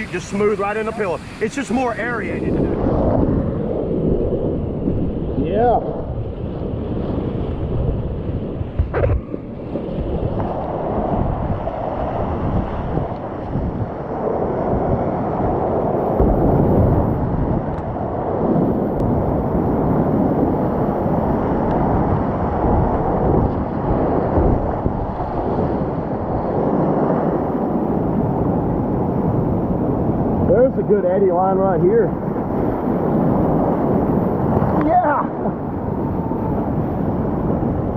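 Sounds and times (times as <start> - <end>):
whitewater rushing: 0.0 - 2.9, 33.4 - 37.4
wind buffeting microphone: 0.0 - 37.9.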